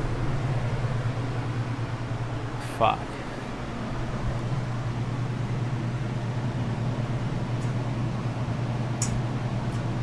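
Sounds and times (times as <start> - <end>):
fan whooshing: 0.0 - 10.0
refrigeration unit humming: 0.0 - 10.0.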